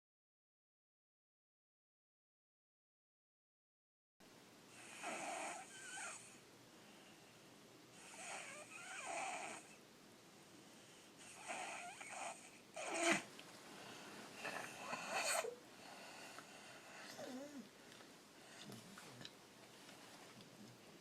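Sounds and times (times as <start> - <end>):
child snoring: 4.7 - 6.4, 8.0 - 9.8, 11.2 - 13.3, 14.4 - 15.6, 16.8 - 17.7.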